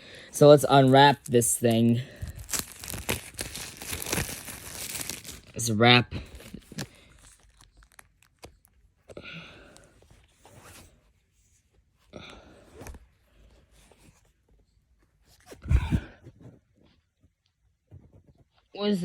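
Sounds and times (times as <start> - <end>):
plastic shrink-wrap tearing: 0.7 - 8.8
plastic crinkles and clicks: 1.1 - 5.6, 6.3 - 9.9.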